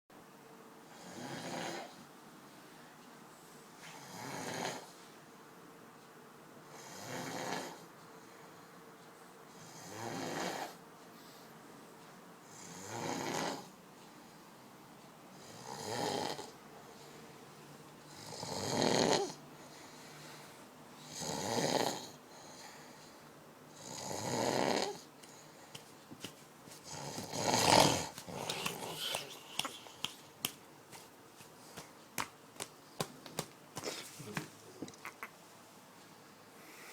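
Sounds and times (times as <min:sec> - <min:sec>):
snoring: 0:00.9 - 0:02.0, 0:03.9 - 0:04.9, 0:06.7 - 0:07.8, 0:09.6 - 0:10.8, 0:12.5 - 0:13.7, 0:15.4 - 0:16.6, 0:18.1 - 0:19.4, 0:21.0 - 0:22.2, 0:23.8 - 0:25.1, 0:26.9 - 0:29.1.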